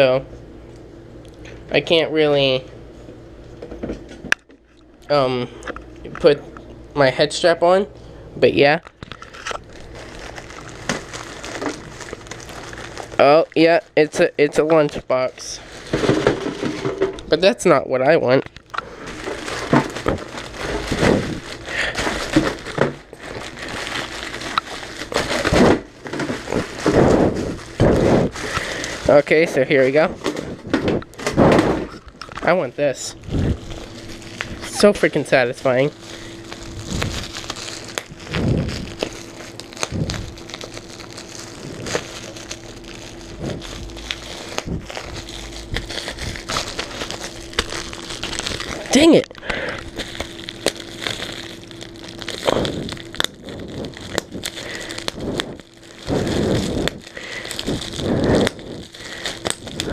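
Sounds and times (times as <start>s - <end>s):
plastic packaging crinkling: 8.7s - 59.9s
small crackles: 8.8s - 16.1s, 18.3s - 59.9s
bubble wrap popping: 9.5s - 16.3s, 18.6s - 32.6s, 33.2s - 59.9s.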